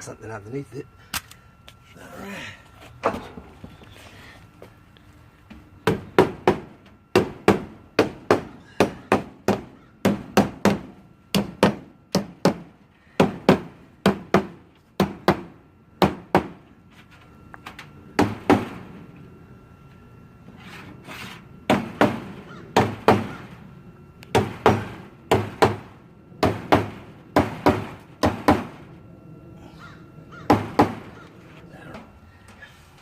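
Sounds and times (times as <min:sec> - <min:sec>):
hammer blows: 0:30.4 - 0:31.2.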